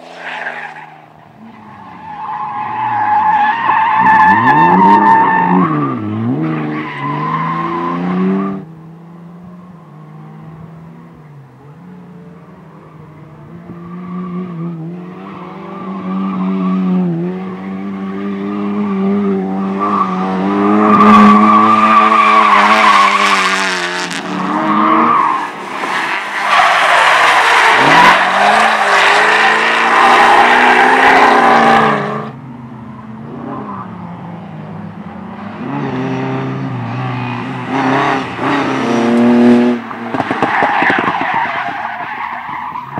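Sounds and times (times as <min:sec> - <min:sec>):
car engine revving: 0:09.9 - 0:32.4, 0:34.8 - 0:42.2.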